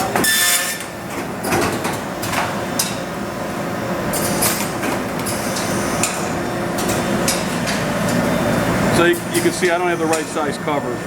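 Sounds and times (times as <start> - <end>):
machine hum: 0.0 - 11.0.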